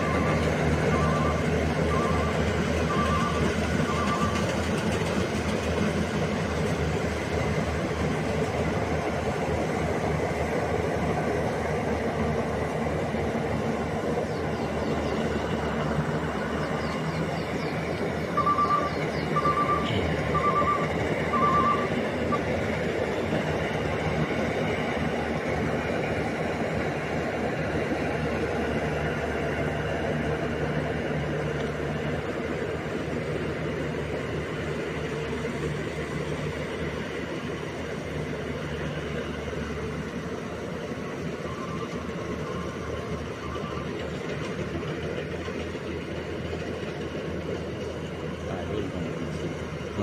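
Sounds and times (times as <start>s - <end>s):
warning beeper beeps: 0.0s - 4.5s, 18.2s - 22.5s
combine harvester running: 0.0s - 50.0s.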